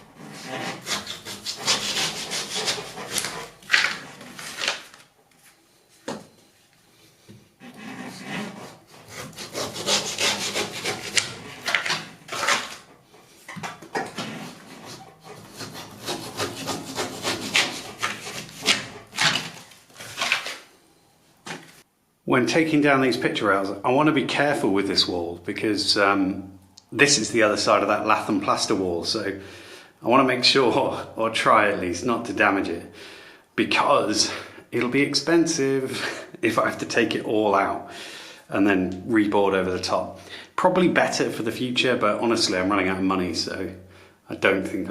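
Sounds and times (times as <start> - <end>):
hand scraping on wall: 0.0 - 5.0, 7.4 - 20.7.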